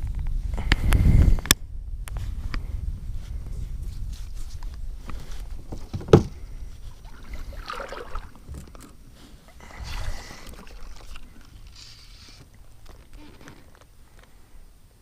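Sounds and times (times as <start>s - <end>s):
water splashing: 6.9s - 8.7s, 9.5s - 12.8s.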